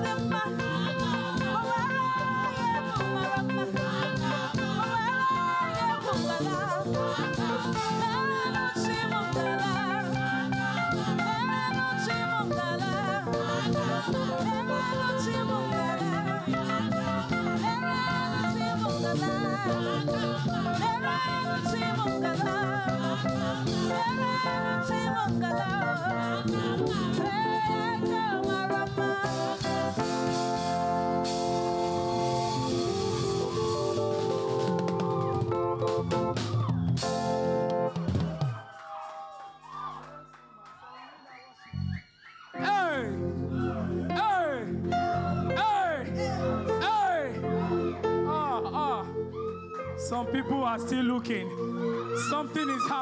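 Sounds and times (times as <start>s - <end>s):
instrumental band with percussion: 0.0s - 39.1s
church praise singing: 0.0s - 53.0s.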